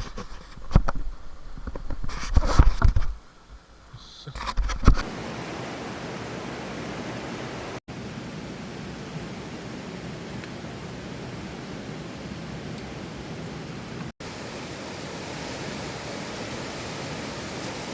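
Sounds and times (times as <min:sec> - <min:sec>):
handling knocks and rustles: 0:00.0 - 0:03.2.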